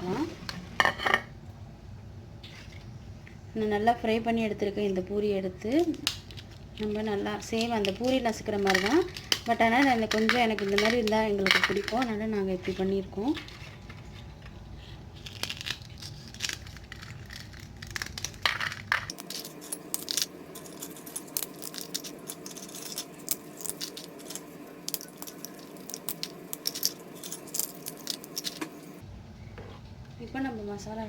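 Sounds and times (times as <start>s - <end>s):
fried bread crackling and snapping: 15.2s - 29.0s.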